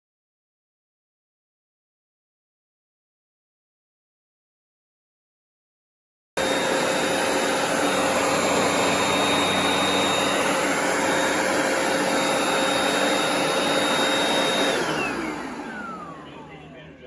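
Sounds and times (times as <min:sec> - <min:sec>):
carpet cleaner running with whine: 0:06.4 - 0:17.0
motor winding down: 0:06.4 - 0:17.0.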